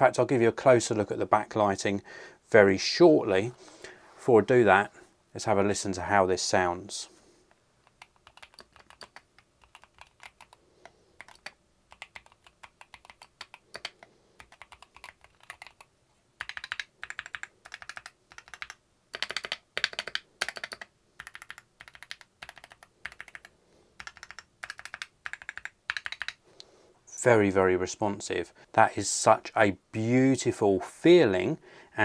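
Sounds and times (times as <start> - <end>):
typing on a keyboard: 7.8 - 10.6, 11.2 - 26.4.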